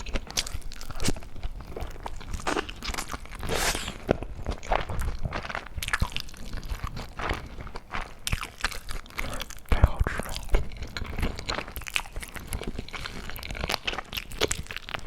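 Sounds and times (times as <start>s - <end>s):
crunching and chewing food: 0.0s - 15.0s
wet mouth clicks: 2.4s - 4.2s.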